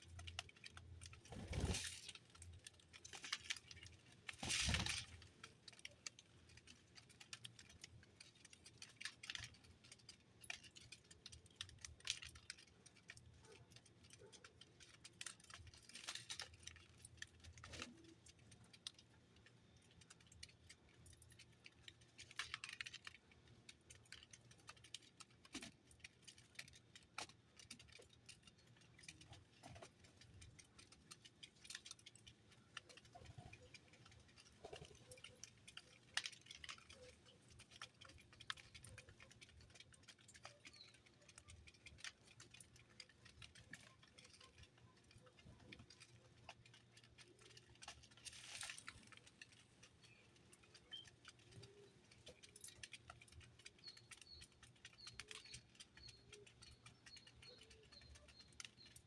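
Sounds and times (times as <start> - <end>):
birds pecking and hopping at feeder: 0.0 - 59.0
clatter at bird feeder: 0.0 - 59.0.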